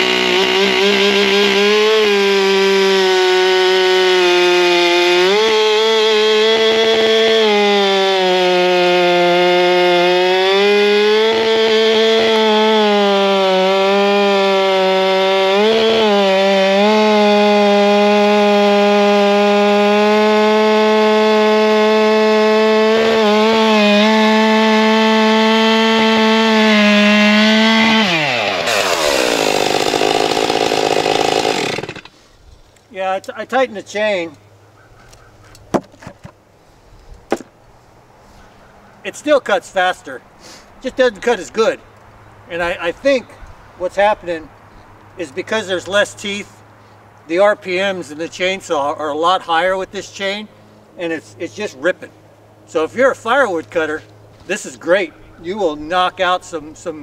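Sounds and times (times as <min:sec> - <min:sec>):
chainsaw cutting log: 0:00.0 - 0:32.2, 0:37.3 - 0:37.6, 0:52.7 - 0:57.0.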